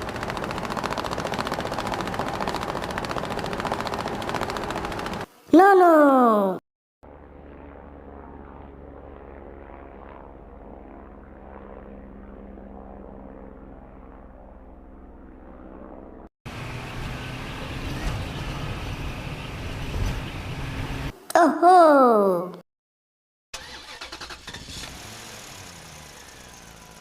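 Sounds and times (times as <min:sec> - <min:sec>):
rough engine sound: 0:00.0 - 0:05.3, 0:16.5 - 0:21.1, 0:23.6 - 0:27.0
helicopter engine and rotor drone: 0:00.0 - 0:05.4, 0:07.1 - 0:21.1.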